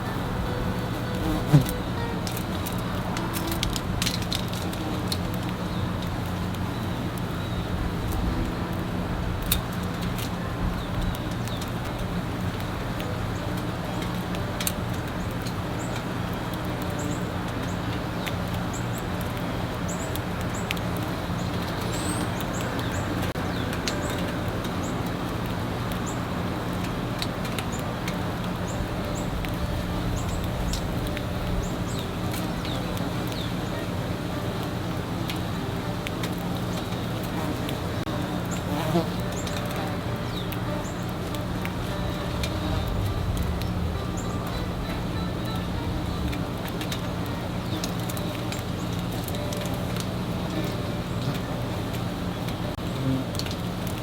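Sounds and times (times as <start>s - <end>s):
steady low hum: 0.0s - 15.9s
birds chirping: 0.0s - 53.8s
wing flutters: 0.0s - 54.0s.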